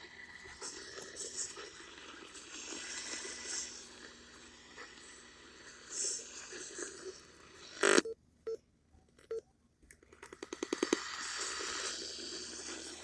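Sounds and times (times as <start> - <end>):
static hiss: 0.0 - 8.0, 10.6 - 13.0.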